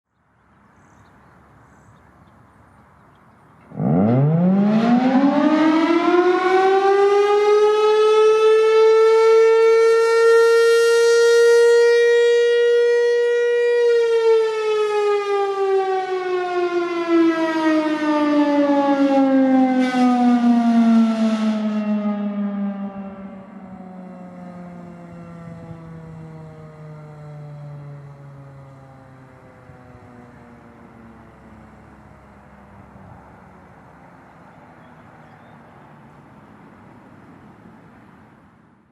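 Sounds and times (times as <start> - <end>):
siren wailing: 3.7 - 36.3.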